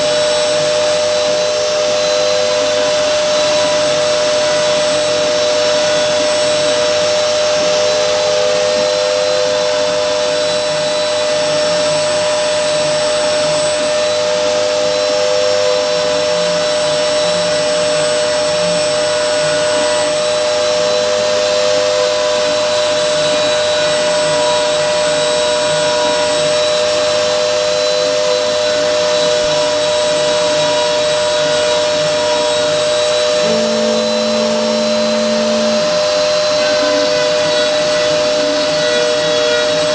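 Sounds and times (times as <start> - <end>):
router spindle whining: 30.5 - 39.9
short lower hum: 33.4 - 37.2.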